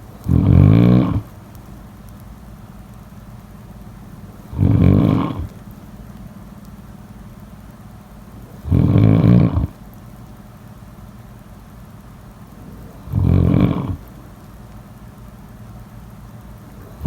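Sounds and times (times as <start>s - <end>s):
steady low hum: 0.0s - 17.0s
person snoring: 0.3s - 1.3s, 4.5s - 5.5s, 8.6s - 9.7s, 13.1s - 14.0s.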